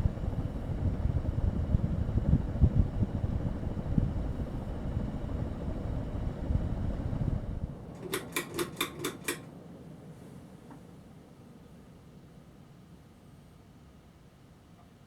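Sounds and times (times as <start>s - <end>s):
ceiling fan running: 0.0s - 12.4s
quick clicks: 8.0s - 9.5s.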